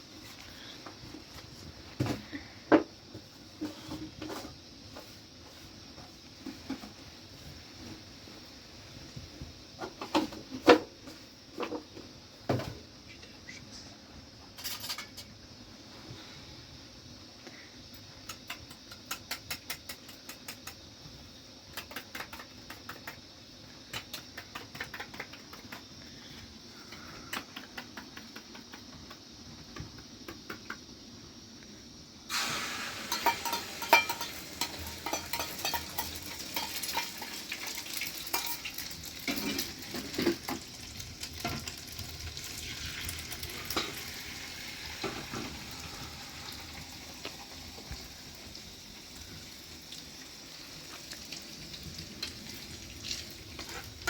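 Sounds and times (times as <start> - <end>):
utensils clicking and tapping: 27.3 - 29.2, 33.1 - 38.7
food sizzling in a pan: 32.3 - 54.0
stirring taps: 33.1 - 38.7.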